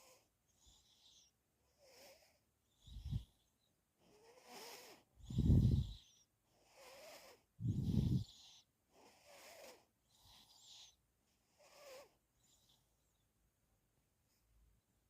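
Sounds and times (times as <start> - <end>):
soft breathing: 0.0 - 13.2
person snoring: 4.1 - 6.1, 6.7 - 10.8.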